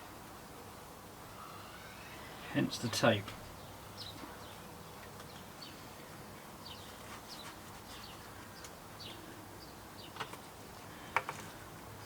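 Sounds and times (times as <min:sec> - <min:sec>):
faint bird chirping: 0:01.3 - 0:10.3.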